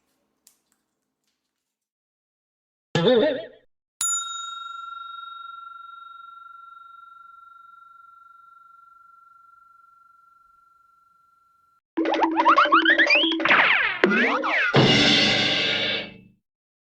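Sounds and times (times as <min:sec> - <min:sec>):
desk bell ringing: 0:04.0 - 0:11.8.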